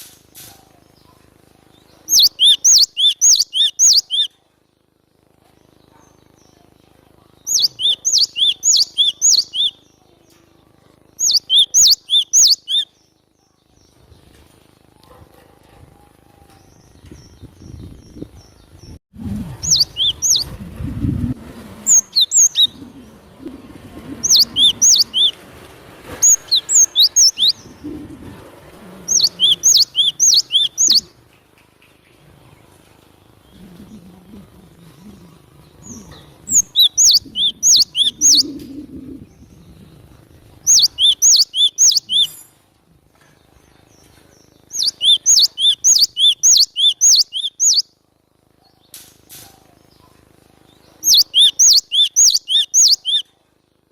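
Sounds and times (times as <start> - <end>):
bird chirping high notes: 2.1 - 4.3, 7.5 - 9.9, 11.2 - 13.0, 19.6 - 20.6, 21.8 - 22.9, 24.2 - 25.4, 26.2 - 27.6, 29.1 - 31.1, 35.8 - 38.6, 40.7 - 42.4, 44.7 - 47.8, 51.0 - 53.2.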